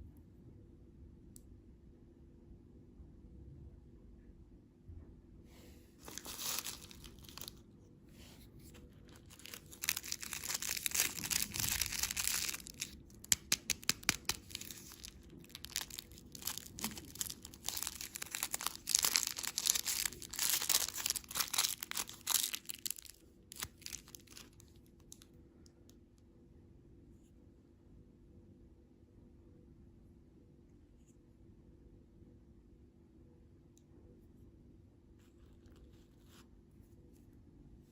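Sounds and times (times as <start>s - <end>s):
candy packaging tearing and crinkling: 6.0s - 7.6s, 8.6s - 25.2s.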